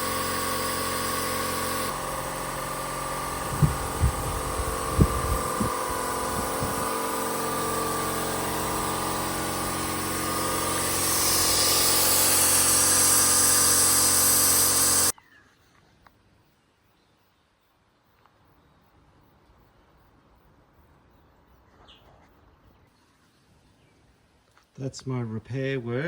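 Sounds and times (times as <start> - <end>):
electric power tool running: 0.0 - 15.1.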